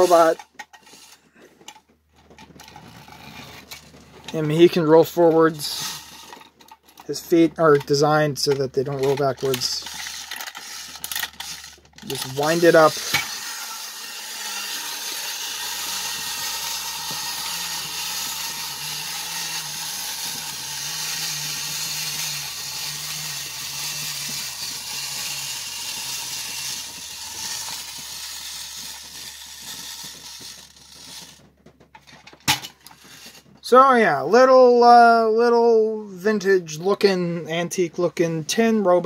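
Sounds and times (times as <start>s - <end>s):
wind-up toy motor whirring: 0.0s - 1.8s, 2.4s - 33.8s.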